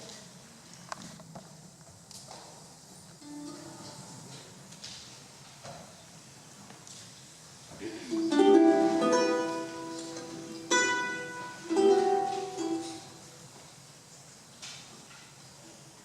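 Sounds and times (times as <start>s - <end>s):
strummed string instrument chords: 8.3s - 13.2s.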